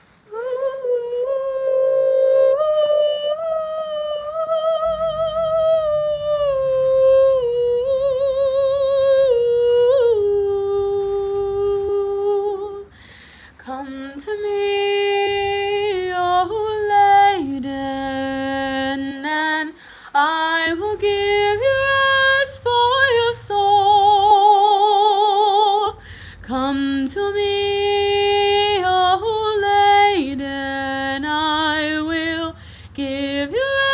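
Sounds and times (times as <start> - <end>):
woman singing unaccompanied: 0.3 - 33.9.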